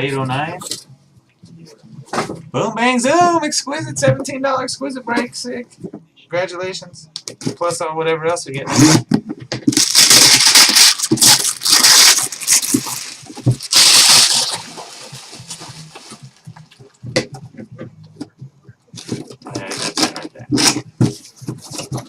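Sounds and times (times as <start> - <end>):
packaging crinkling and ripping: 9.7 - 16.4.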